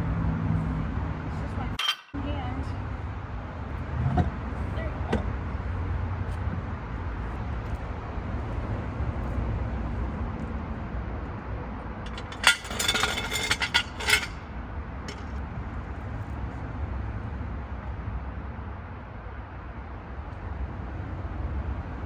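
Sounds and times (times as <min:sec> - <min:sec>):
metal tools clinking: 0:01.8 - 0:02.2, 0:12.1 - 0:14.4.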